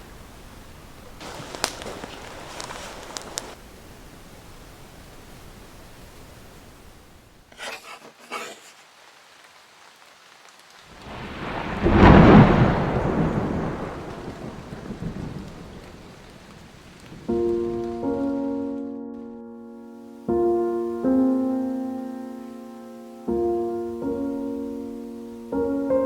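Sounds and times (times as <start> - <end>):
rain hissing: 0.0 - 26.0
rolling thunderclap: 10.9 - 18.2.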